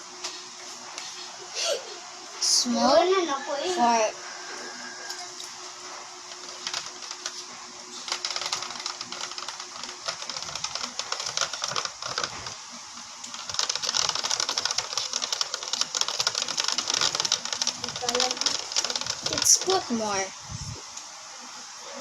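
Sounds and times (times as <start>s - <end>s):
slime stirred in plastic box: 13.4s - 19.9s.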